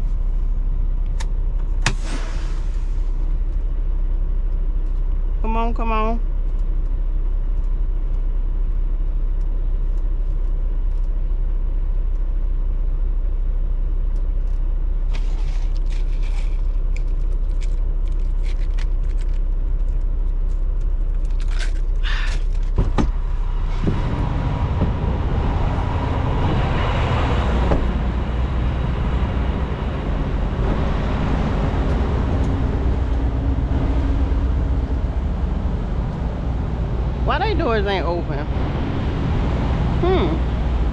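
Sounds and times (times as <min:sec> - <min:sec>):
diesel truck engine idling: 0:19.4 - 0:40.9.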